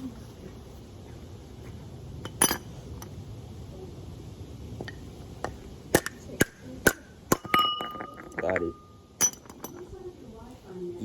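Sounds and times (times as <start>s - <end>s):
sharp ringing metal clinks: 7.4s - 9.9s.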